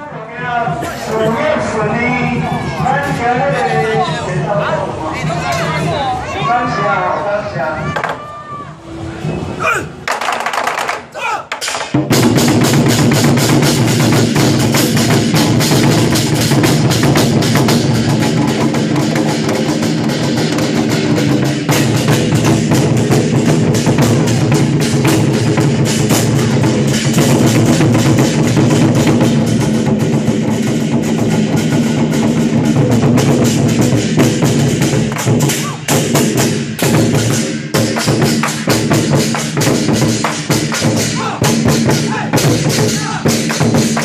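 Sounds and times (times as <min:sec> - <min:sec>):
rapid drumming on large drums: 0:10.0 - 0:44.0.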